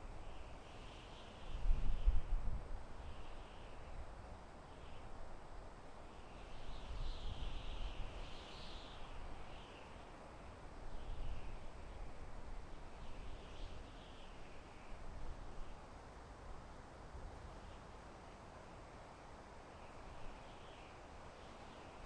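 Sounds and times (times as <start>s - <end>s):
wind through forest trees: 0.0s - 22.0s
faint bird chirping: 4.6s - 5.1s, 6.1s - 15.9s, 17.4s - 22.0s.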